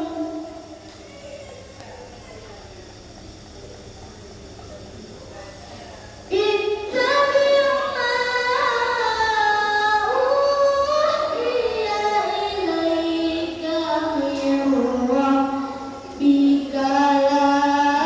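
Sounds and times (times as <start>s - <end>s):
child reciting melodically: 6.3s - 18.0s.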